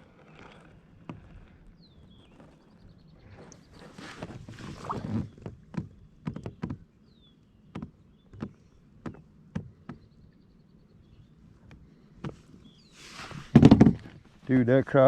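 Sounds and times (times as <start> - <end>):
short rustle: 3.3 - 5.4, 12.8 - 14.7
sharp knocks on a hull: 7.7 - 10.1, 13.5 - 14.2.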